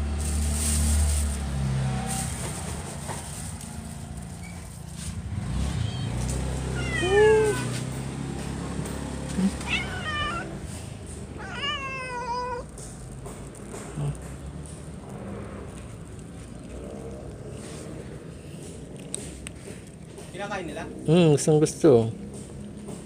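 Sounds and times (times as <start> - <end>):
cat meowing: 5.8 - 7.8, 9.4 - 10.6, 11.4 - 12.7.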